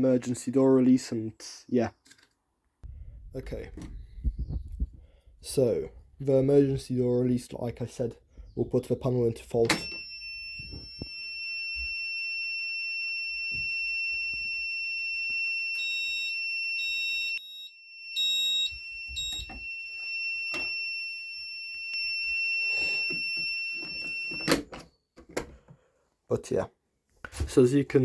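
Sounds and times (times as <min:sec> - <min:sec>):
alarm panel buzzer steady tone: 0:09.7 - 0:24.7.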